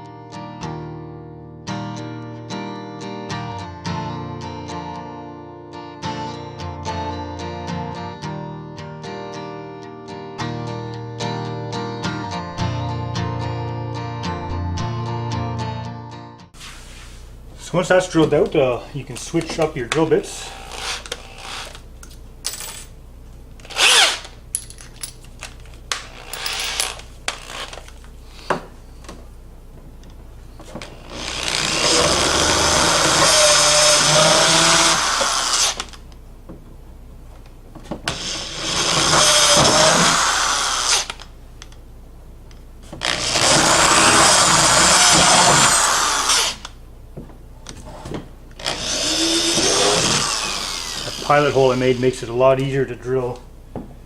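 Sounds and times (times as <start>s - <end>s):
power drill drilling: 20.4s - 21.8s, 23.6s - 24.3s, 31.0s - 36.0s, 38.1s - 41.2s, 43.0s - 46.7s, 48.6s - 52.2s.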